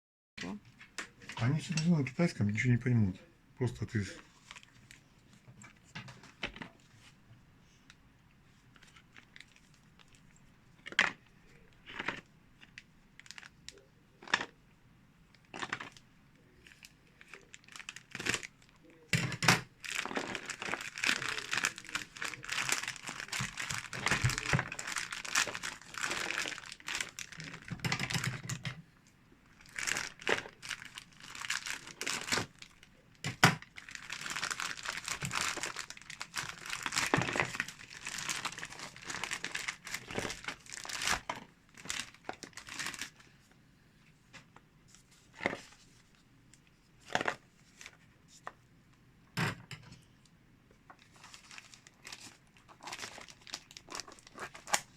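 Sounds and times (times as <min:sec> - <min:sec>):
plastic packaging crinkling: 0:08.7 - 0:14.6, 0:15.4 - 0:28.7, 0:29.5 - 0:43.3, 0:50.9 - 0:54.9.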